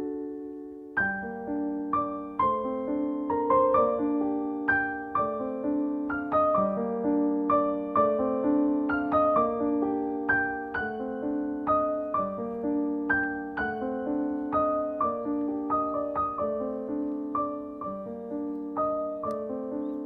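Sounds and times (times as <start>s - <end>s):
soft solo piano music: 0.0s - 20.0s.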